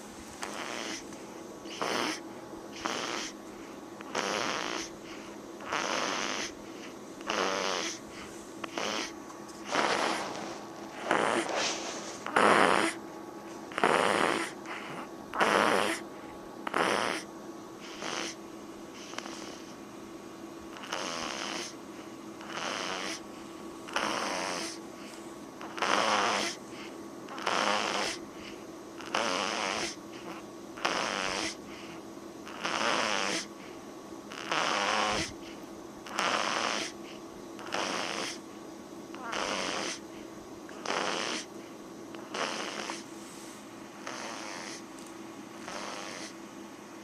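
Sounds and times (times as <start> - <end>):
faint steady hum: 0.0 - 47.0
person snoring: 0.4 - 1.0, 1.7 - 2.2, 2.8 - 3.4, 4.1 - 5.0, 5.6 - 6.6, 7.2 - 8.0, 8.6 - 13.0, 13.7 - 16.0, 16.7 - 18.4, 20.8 - 21.8, 22.4 - 23.2, 23.9 - 24.8, 25.6 - 26.6, 27.3 - 28.2, 29.0 - 31.6, 32.5 - 33.5, 34.3 - 35.4, 36.1 - 37.0, 37.6 - 38.4, 39.2 - 40.0, 40.7 - 41.5, 42.2 - 43.0, 44.0 - 44.8, 45.6 - 46.4.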